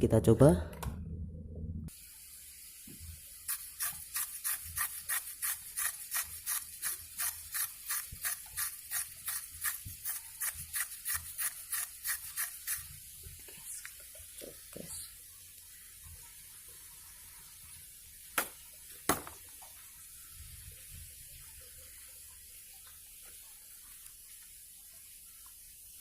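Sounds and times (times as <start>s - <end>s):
sickle blade scraping: 3.5s - 12.9s.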